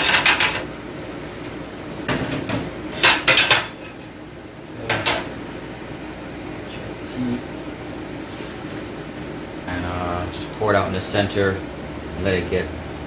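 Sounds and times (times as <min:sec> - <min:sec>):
pans and utensils clattering: 0:00.0 - 0:00.7, 0:02.1 - 0:04.1, 0:04.8 - 0:05.3.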